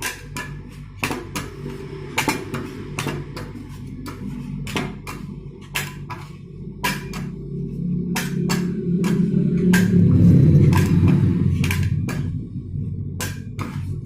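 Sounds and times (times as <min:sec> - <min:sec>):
steady low hum: 0:00.0 - 0:14.0
metal spatulas scraping steel plate: 0:08.1 - 0:12.4, 0:13.2 - 0:14.0.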